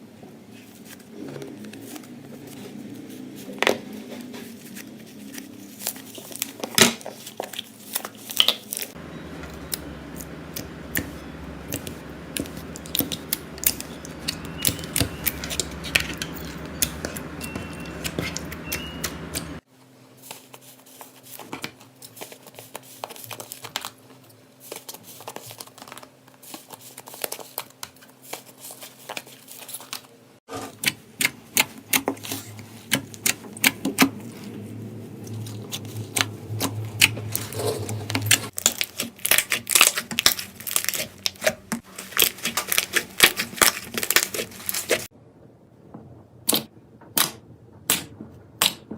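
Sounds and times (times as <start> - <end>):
low background hum: 0.0 - 48.9
slime crackling and popping: 5.8 - 9.0, 38.1 - 45.1.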